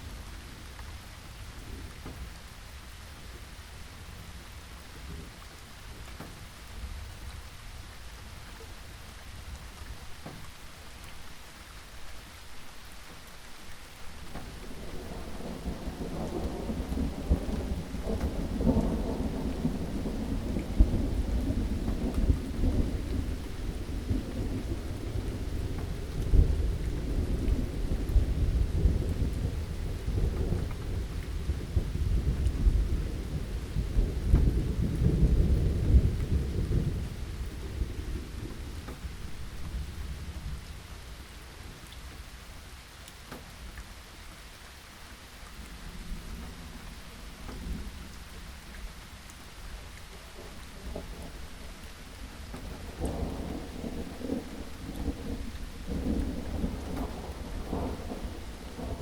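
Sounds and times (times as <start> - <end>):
steady rainfall: 0.0 - 59.0
thunder rumbling: 14.1 - 41.8, 45.6 - 59.0.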